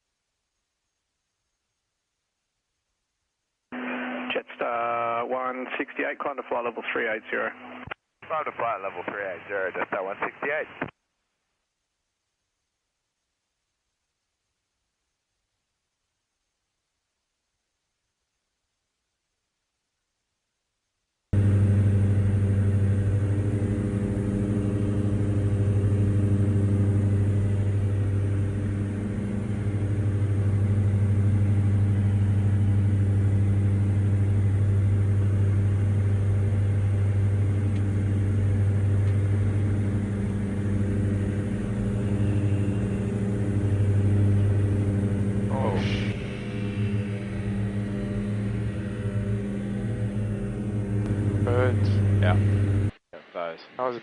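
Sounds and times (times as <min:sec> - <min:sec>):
aircraft engines droning: 0:21.4 - 0:52.9.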